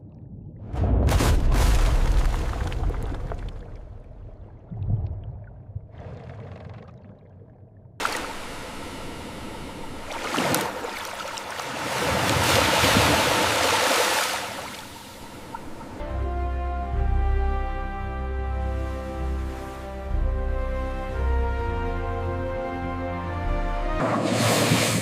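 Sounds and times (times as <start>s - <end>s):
rushing churning water: 8.0s - 16.0s.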